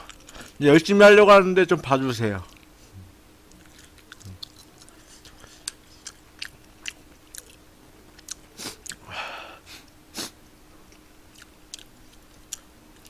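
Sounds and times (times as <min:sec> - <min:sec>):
lip smacks: 0:03.5 - 0:09.1
wet chewing clicks: 0:03.5 - 0:09.1, 0:10.9 - 0:13.0
breathy noise: 0:08.5 - 0:10.4.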